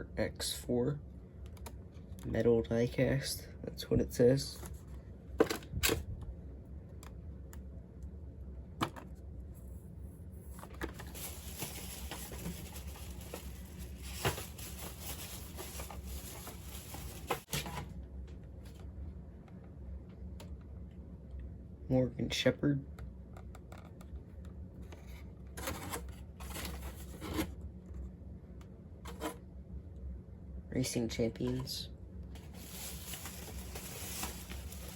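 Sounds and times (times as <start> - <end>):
packaging rustling: 10.5 - 17.8, 32.4 - 34.9.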